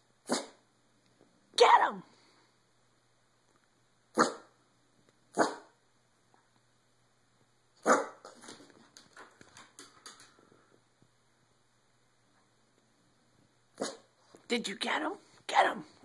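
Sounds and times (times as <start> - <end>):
dog barking sharply: 0.3 - 0.6, 4.2 - 4.5, 5.4 - 5.7, 7.8 - 8.2.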